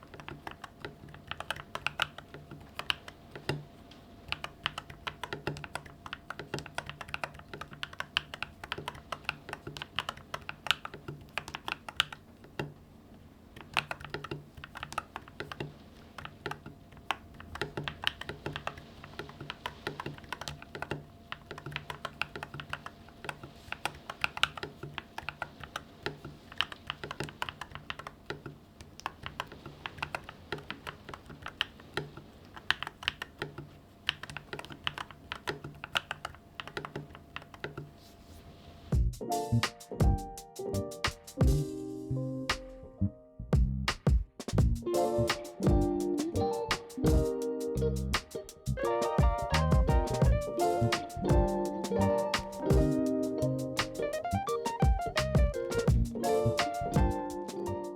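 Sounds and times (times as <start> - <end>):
typing on mechanical keyboard: 0.0 - 3.6, 4.2 - 12.8, 13.5 - 37.9, 48.2 - 57.9.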